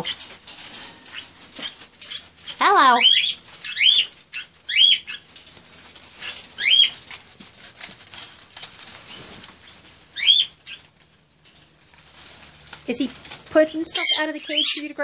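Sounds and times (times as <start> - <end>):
pet bird chirping: 0.0 - 7.4, 8.9 - 11.0, 12.9 - 15.0
light clicks and rustling: 5.1 - 14.0.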